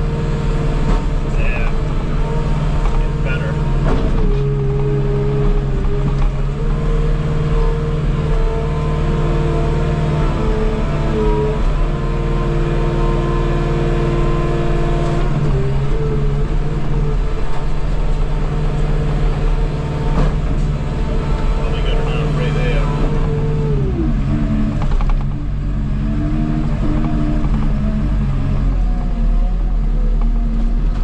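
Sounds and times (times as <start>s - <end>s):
diesel engine running under load: 0.0s - 31.0s
hydraulic whine: 0.0s - 31.0s.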